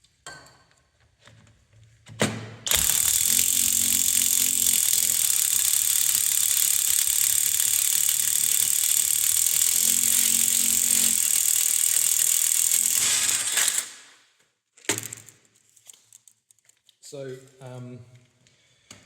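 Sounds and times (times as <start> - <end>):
impact wrench hammering: 2.7 - 13.8.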